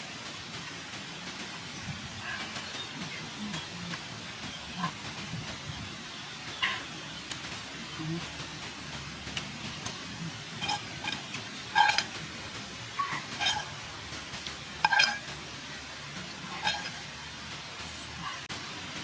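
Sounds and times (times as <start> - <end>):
utensil clinking against cookware: 10.6 - 12.4, 13.0 - 15.4, 16.3 - 17.1.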